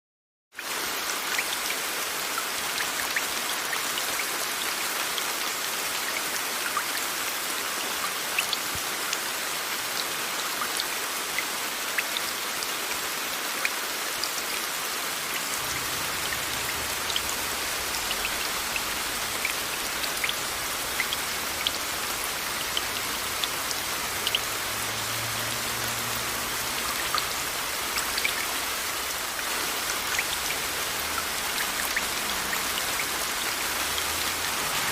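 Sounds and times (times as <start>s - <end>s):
steady rain: 0.5s - 34.9s.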